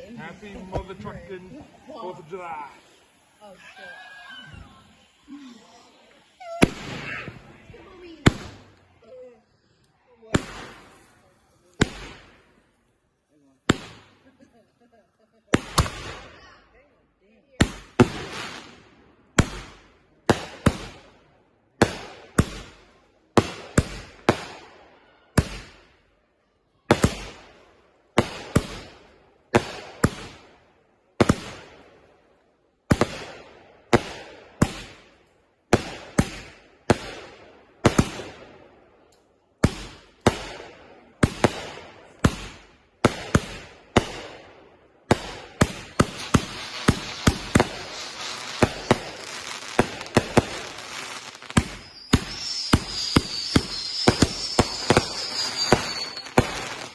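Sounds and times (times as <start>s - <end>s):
fireworks banging: 0.0s - 9.1s, 10.3s - 16.6s, 17.6s - 24.6s, 26.9s - 30.6s, 31.2s - 32.1s, 32.8s - 56.9s
steady hiss: 0.0s - 13.1s, 45.8s - 56.9s
fireworks crackling: 0.0s - 24.8s, 26.9s - 56.9s.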